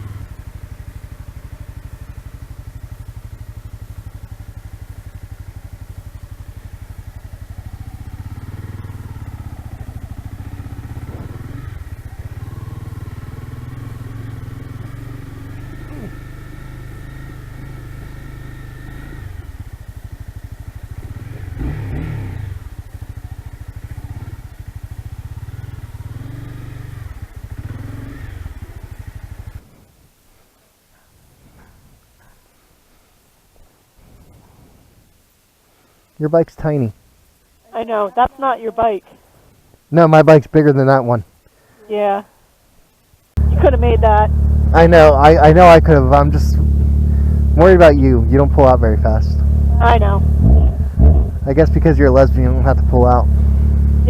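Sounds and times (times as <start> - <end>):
motorcycle engine revving: 0.0 - 29.7, 43.4 - 54.0.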